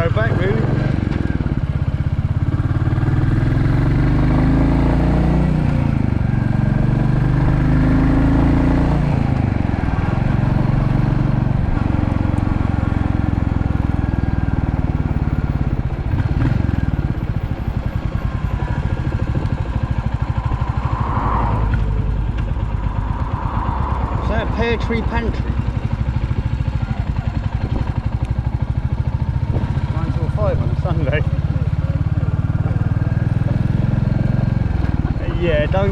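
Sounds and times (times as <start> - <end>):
motorcycle engine thumping: 0.0 - 2.6, 9.2 - 20.8, 25.0 - 35.9.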